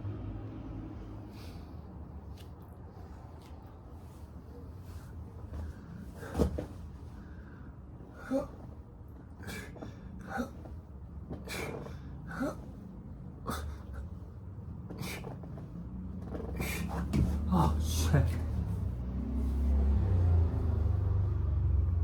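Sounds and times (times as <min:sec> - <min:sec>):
short strained grunts: 0:09.4 - 0:10.8, 0:11.4 - 0:12.8, 0:13.4 - 0:14.2, 0:14.9 - 0:15.5, 0:16.4 - 0:18.4.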